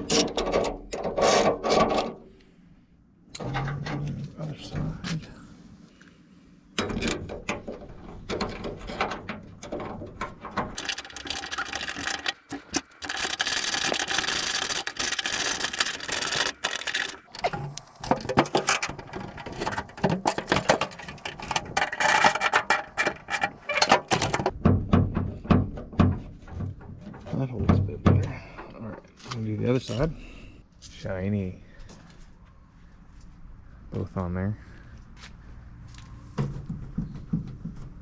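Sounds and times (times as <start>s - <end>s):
metal latch clicks and rattles: 10.7s - 24.5s
ratchet-like rasping: 10.8s - 24.5s.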